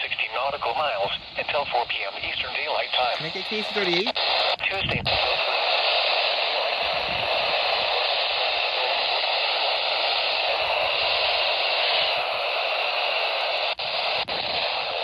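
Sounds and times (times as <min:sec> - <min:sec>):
radio static hiss: 0:00.0 - 0:15.0.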